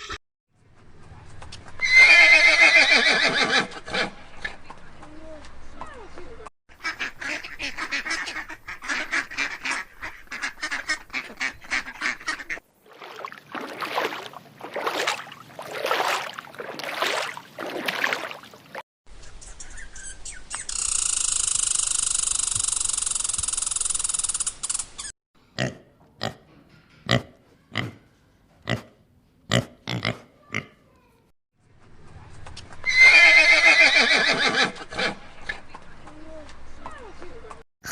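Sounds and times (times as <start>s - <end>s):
waterfowl honking and quacking: 6.8s - 12.6s.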